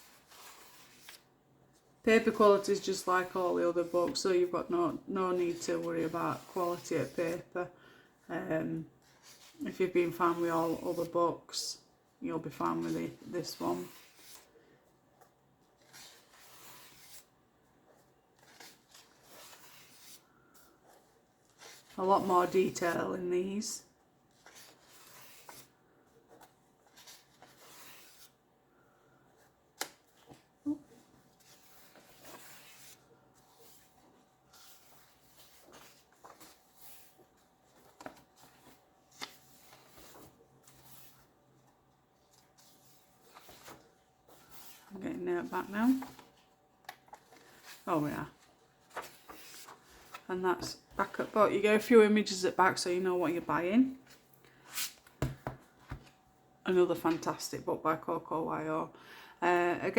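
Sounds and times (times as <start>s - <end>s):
paper pages rustling: 0.0s - 7.5s, 12.5s - 14.6s, 15.2s - 23.0s, 24.3s - 28.4s, 29.1s - 51.5s, 54.0s - 56.2s
soft taps of pages: 55.0s - 56.2s.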